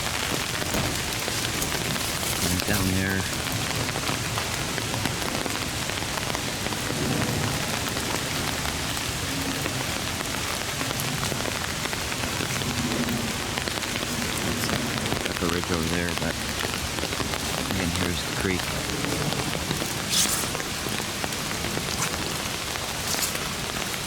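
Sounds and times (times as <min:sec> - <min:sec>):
light rain hissing: 0:00.0 - 0:24.0
raindrops ticking on surfaces: 0:00.0 - 0:24.0.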